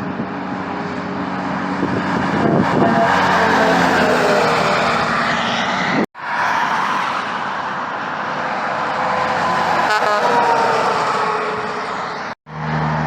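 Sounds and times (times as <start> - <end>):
heavy trucks passing: 0.0 - 13.0.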